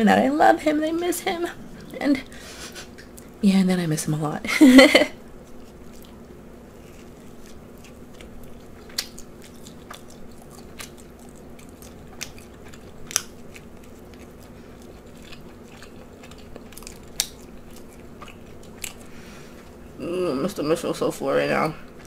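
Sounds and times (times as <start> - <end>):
faint low hum: 0.0 - 22.0
person chewing food: 5.4 - 20.0, 21.6 - 22.0.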